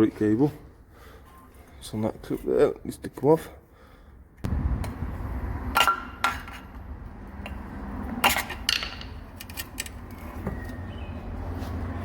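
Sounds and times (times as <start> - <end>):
steady low rumble: 4.4 - 5.8.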